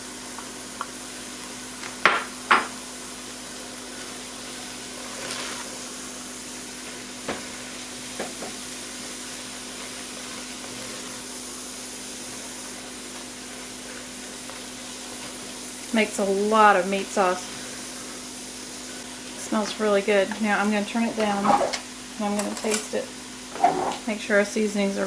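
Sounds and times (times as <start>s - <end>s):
meat sauce sizzling in a pan: 0.0s - 25.0s
utensil stirring: 23.5s - 24.1s.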